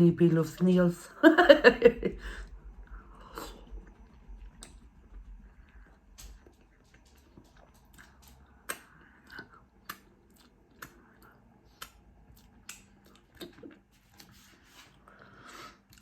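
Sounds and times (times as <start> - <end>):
person chewing food: 2.2 - 16.0
wet mouth clicks: 7.6 - 13.8.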